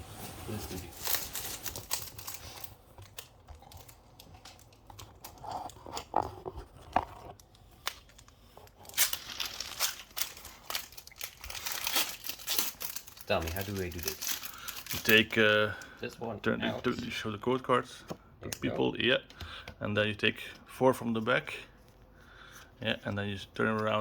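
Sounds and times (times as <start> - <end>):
foil wrapper crinkling and tearing: 0.9 - 6.1, 7.2 - 16.0.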